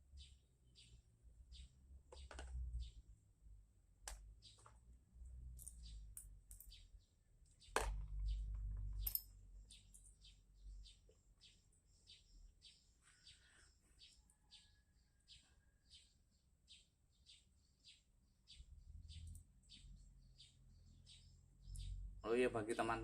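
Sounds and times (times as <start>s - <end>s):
small parts clicking and knocking: 2.1s - 2.7s, 4.0s - 6.8s, 7.4s - 10.2s.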